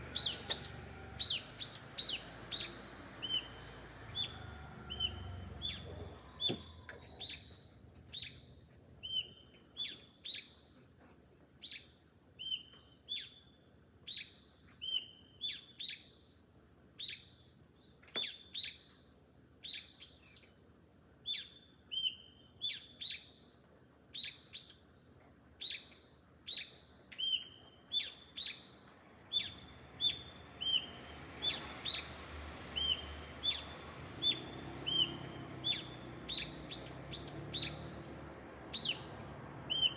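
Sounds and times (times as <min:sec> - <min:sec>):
bird chirping: 0:00.0 - 0:10.6, 0:25.6 - 0:39.9.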